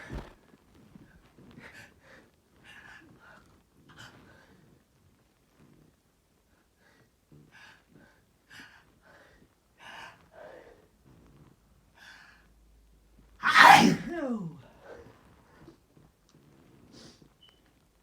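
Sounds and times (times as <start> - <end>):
person sneezing: 13.4 - 14.6.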